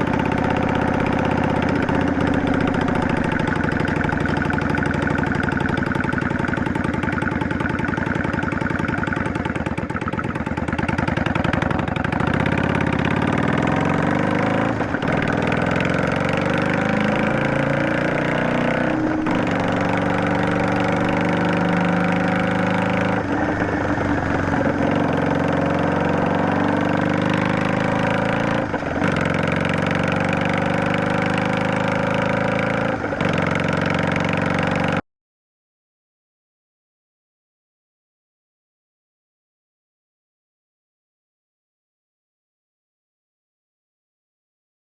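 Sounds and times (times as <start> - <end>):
motorcycle engine revving: 0.0 - 35.0.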